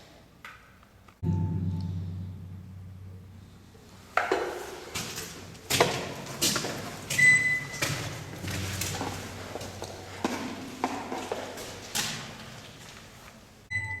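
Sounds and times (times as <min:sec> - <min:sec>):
metallic ringing strike: 0:01.2 - 0:04.2.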